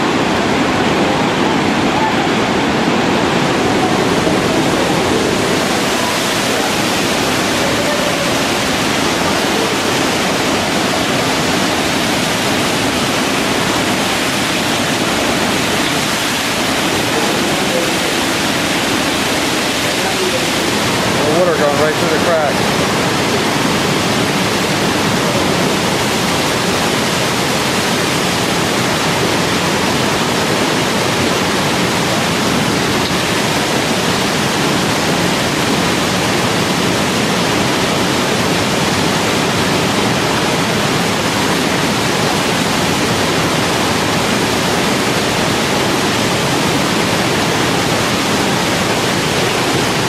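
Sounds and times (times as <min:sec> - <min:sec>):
waterfall rushing: 0:00.0 - 0:50.0.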